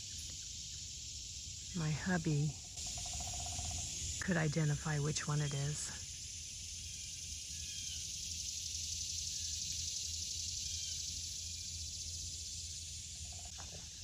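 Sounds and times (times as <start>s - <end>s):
cicadas buzzing: 0.0s - 14.0s.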